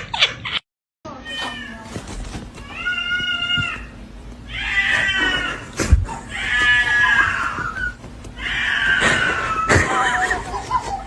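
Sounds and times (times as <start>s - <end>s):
cat meowing: 2.6s - 3.9s, 4.5s - 5.7s, 6.3s - 9.6s.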